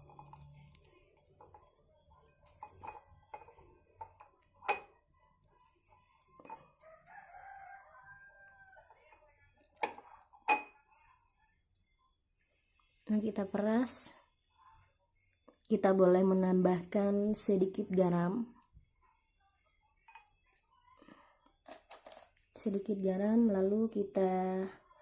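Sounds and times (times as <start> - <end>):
faint rooster crow: 6.6 - 9.2.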